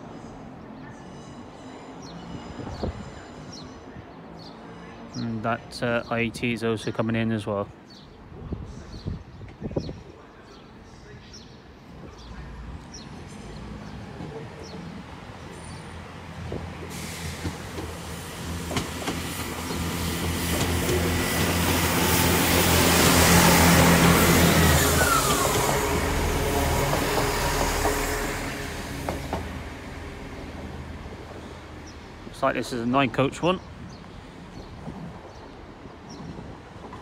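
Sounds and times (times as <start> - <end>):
train engine drone: 11.7 - 32.4
rush of train wheels and air: 12.7 - 32.3, 33.7 - 37.0.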